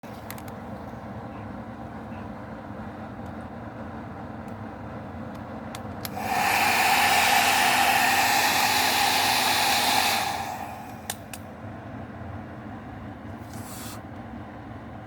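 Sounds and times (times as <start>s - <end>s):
hair dryer blowing: 6.1s - 11.4s.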